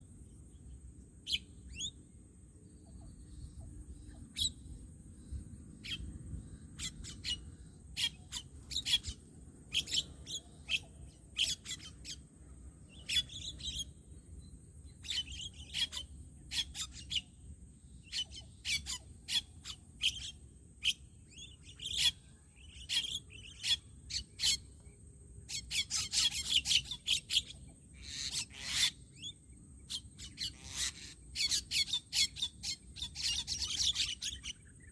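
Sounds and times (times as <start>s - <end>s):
starlings giving harsh calls: 6.8s - 12.2s, 15.0s - 17.2s, 18.1s - 24.6s, 25.5s - 29.3s, 29.9s - 34.7s.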